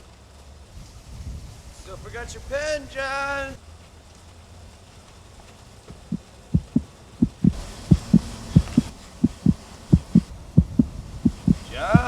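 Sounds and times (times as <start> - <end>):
heartbeat thumps: 6.0 - 12.0
low hum: 6.0 - 12.0.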